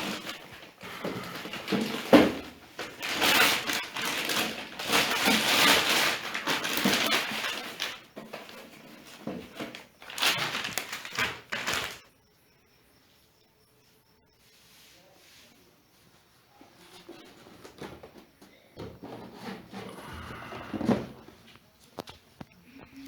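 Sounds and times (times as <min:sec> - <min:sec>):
packaging rustling and crinkling: 0:00.0 - 0:12.1.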